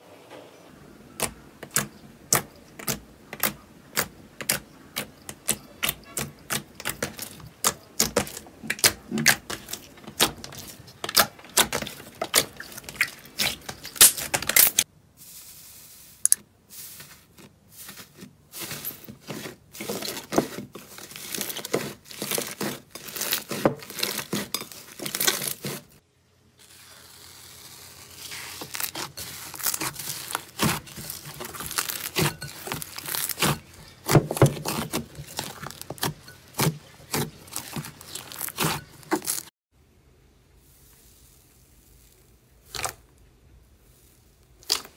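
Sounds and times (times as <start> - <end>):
slime crackling and popping: 1.2 - 14.8, 19.8 - 25.8, 26.6 - 39.5, 44.5 - 44.9.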